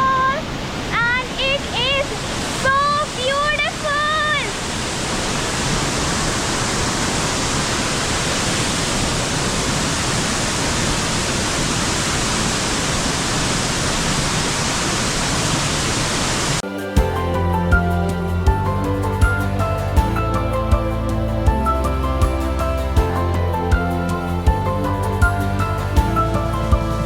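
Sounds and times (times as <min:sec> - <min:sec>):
waterfall rushing: 0:00.0 - 0:27.0
background music: 0:16.6 - 0:27.0.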